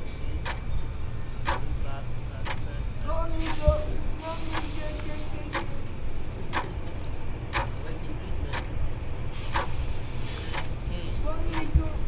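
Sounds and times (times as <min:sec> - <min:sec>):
clock ticking: 0:01.4 - 0:01.7, 0:06.5 - 0:06.8, 0:07.5 - 0:07.8, 0:11.5 - 0:11.8.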